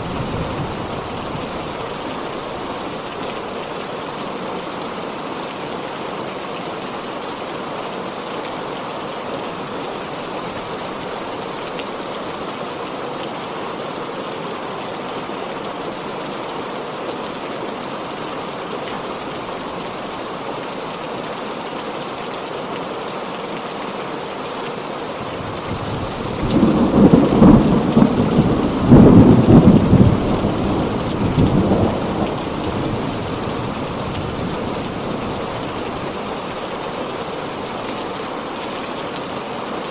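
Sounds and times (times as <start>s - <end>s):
heavy rain: 0.0s - 39.9s
thunder rumbling: 25.4s - 36.4s.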